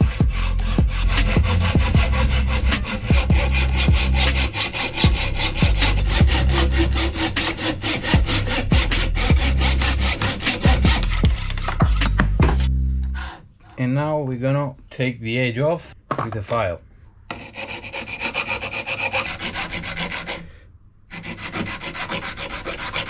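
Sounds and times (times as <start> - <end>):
hacksaw cutting metal tube: 0.0 - 13.8, 17.3 - 20.5, 21.1 - 23.0.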